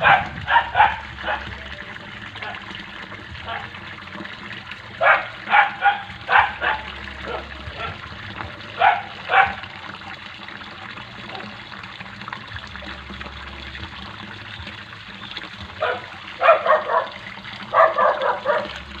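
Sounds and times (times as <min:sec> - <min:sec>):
dog barking: 0:00.0 - 0:01.6, 0:02.4 - 0:02.7, 0:03.4 - 0:03.8, 0:05.0 - 0:08.0, 0:08.8 - 0:09.7, 0:15.8 - 0:18.8
running water: 0:00.0 - 0:19.0.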